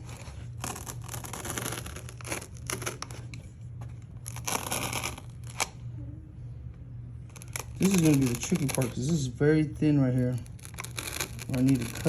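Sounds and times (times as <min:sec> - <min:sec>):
foam tearing: 0:00.0 - 0:03.3, 0:04.0 - 0:05.8, 0:07.3 - 0:09.2, 0:10.2 - 0:12.0.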